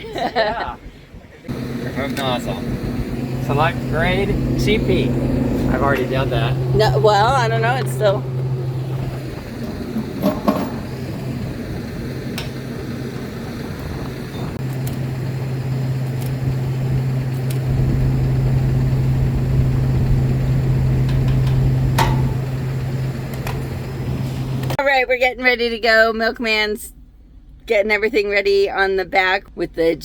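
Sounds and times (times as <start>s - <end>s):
mechanical hum: 1.4s - 24.8s
deep low rumble: 1.5s - 24.8s.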